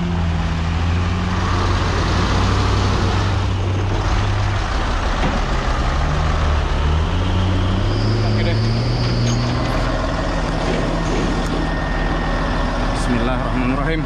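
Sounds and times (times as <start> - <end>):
truck diesel engine running: 0.0 - 14.0.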